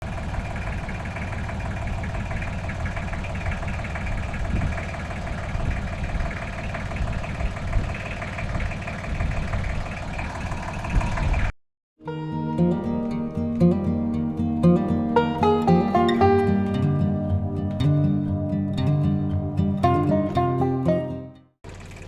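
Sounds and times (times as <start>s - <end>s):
engine idling with whine: 0.0s - 11.5s, 21.7s - 22.0s.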